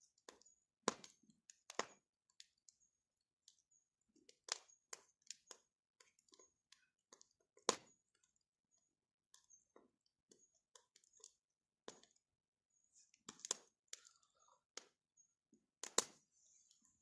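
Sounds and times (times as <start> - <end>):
bonfire crackling: 0.2 - 2.5, 4.2 - 8.1, 13.0 - 14.9, 15.8 - 16.2.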